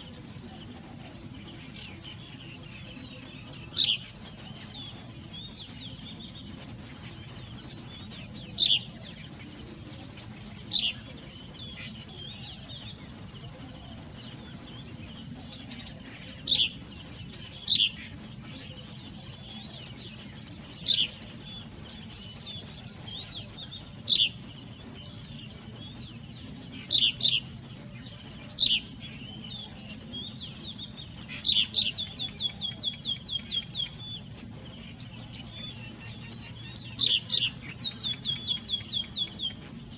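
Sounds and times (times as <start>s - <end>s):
birds chirping: 0.0s - 39.9s
low background hum: 0.0s - 39.9s.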